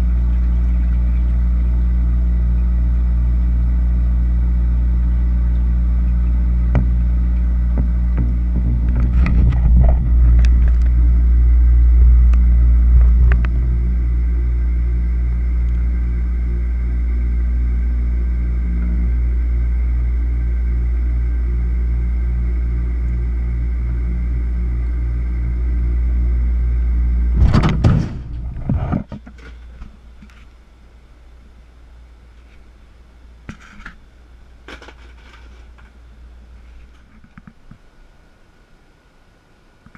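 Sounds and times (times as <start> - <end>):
low machine hum: 0.0 - 39.9
loud clatter of knocks: 27.4 - 29.2.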